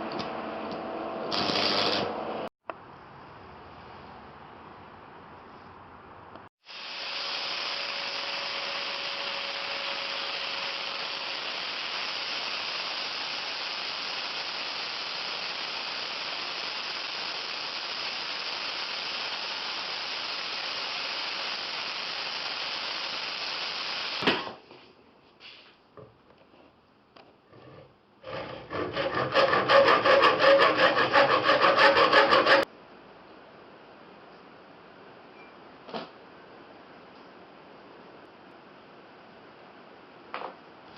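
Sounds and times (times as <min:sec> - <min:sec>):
steady abrasive rubbing: 0:27.5 - 0:32.7
rapid back-and-forth scraping: 0:27.6 - 0:32.7.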